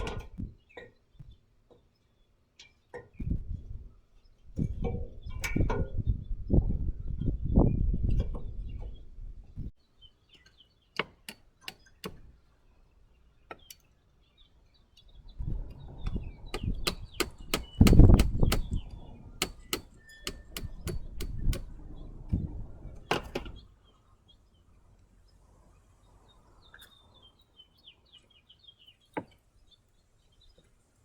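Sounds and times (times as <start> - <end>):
faint birds chirping: 0.2 - 31.0
sharp knocks and taps: 11.0 - 12.3, 16.5 - 18.8, 19.4 - 21.8
rumbling handling noise: 15.3 - 23.7.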